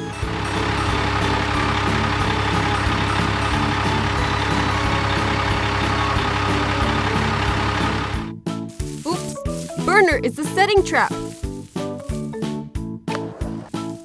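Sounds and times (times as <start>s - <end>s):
cartoon truck engine humming: 0.0s - 8.3s.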